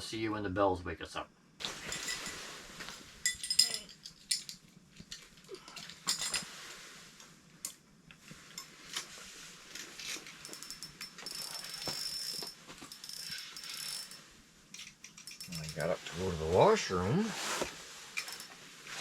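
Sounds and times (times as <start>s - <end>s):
high metallic ringing: 1.8s - 2.6s, 3.2s - 4.6s, 10.5s - 14.3s
fishing reel ratchet clicking: 10.0s - 14.2s, 18.2s - 18.6s.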